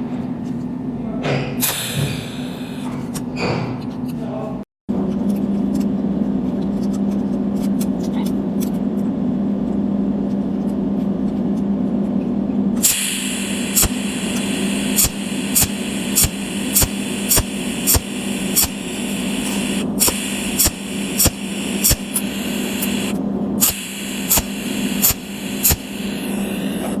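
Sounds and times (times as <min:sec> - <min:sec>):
welding hiss: 0:01.6 - 0:02.9, 0:12.8 - 0:27.0
machine hum: 0:01.6 - 0:03.4, 0:12.5 - 0:27.0
spot welder cracks: 0:12.8 - 0:26.7.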